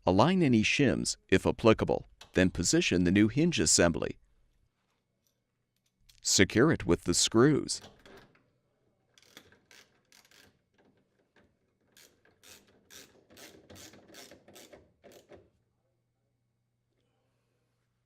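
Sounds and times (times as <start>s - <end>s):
socket tool driving screws: 12.0s - 15.4s.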